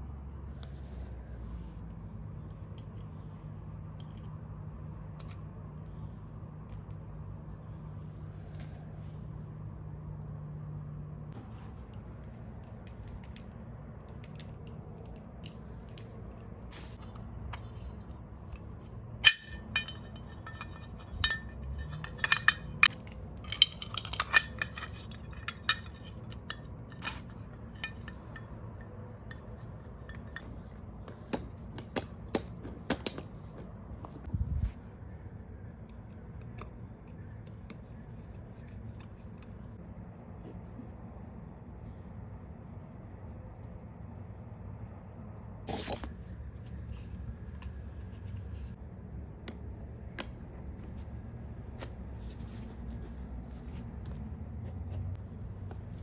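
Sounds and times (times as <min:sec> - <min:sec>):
steady low hum: 0:00.0 - 0:56.0
metal tools clinking: 0:19.1 - 0:30.7.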